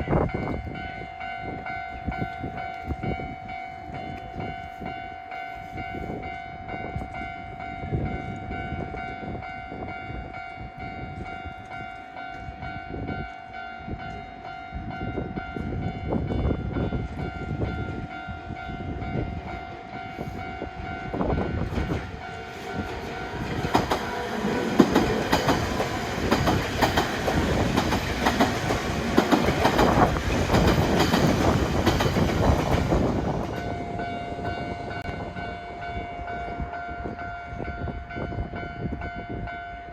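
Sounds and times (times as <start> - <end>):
level crossing warning bell: 0.0 - 39.9
train wheels clattering over rails: 21.3 - 33.7.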